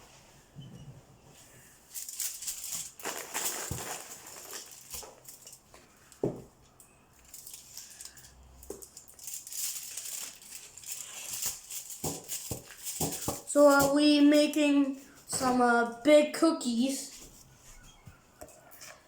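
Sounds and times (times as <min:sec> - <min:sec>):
tinfoil pan crinkling: 0:01.9 - 0:05.7, 0:07.2 - 0:14.6.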